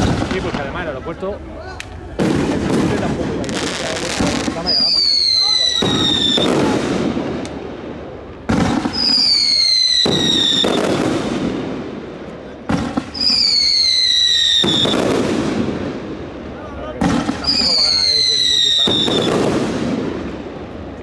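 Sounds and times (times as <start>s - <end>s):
firework bang: 0.0s - 16.2s
firework crackling: 0.0s - 21.0s
firework whistle: 1.8s - 7.6s, 8.6s - 11.4s, 13.1s - 15.3s, 17.4s - 19.6s.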